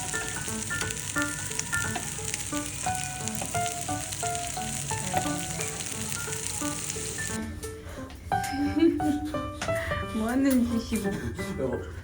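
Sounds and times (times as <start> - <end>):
steady sizzling hiss: 0.0 - 7.4.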